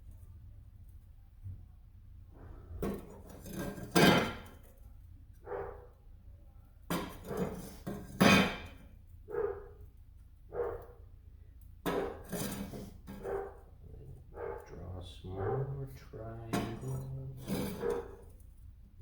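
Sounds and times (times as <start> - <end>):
dog barking: 5.4 - 6.0, 9.3 - 9.8, 10.5 - 11.0, 13.2 - 16.0, 17.6 - 18.2.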